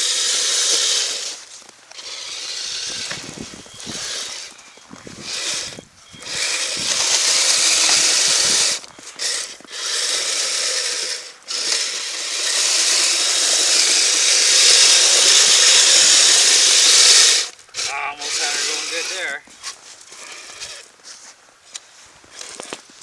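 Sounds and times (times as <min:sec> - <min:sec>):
toy electric drive and gearbox whirring: 0:00.0 - 0:23.0.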